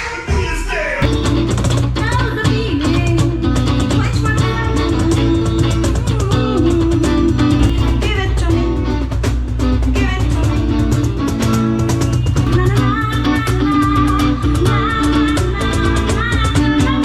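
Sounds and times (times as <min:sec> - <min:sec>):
guitar: 0:00.0 - 0:17.0
drum beat: 0:01.0 - 0:02.1, 0:02.7 - 0:14.0
sustained bass: 0:01.0 - 0:16.3.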